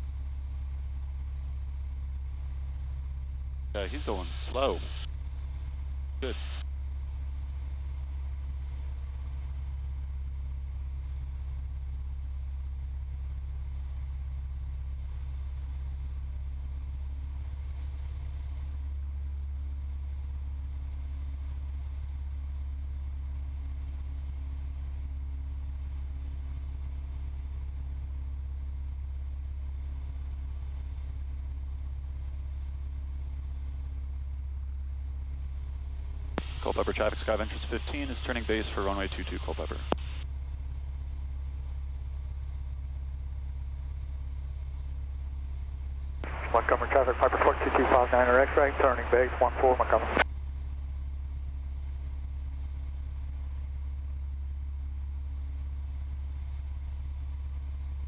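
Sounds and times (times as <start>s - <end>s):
light aircraft engine drone: 0.0s - 58.0s.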